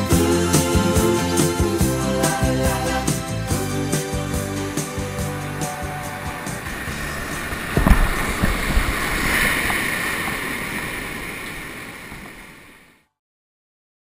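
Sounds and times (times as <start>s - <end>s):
whitewater river rushing: 4.6s - 12.8s
wind buffeting microphone: 5.9s - 12.8s.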